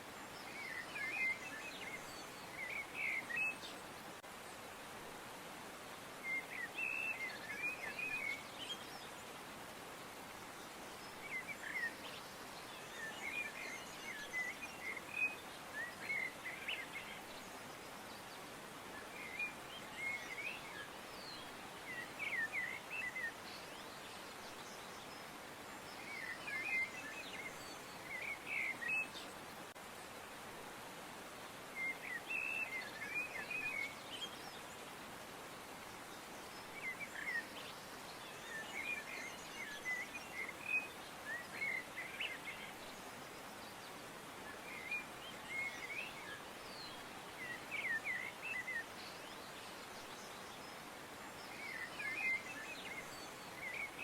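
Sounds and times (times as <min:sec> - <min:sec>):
background hiss: 0:00.0 - 0:54.0
small birds chirping: 0:31.6 - 0:54.0.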